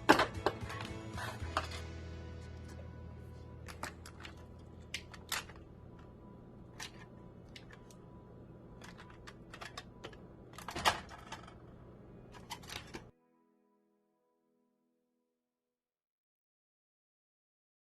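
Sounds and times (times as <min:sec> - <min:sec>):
low hum: 0:00.7 - 0:13.1.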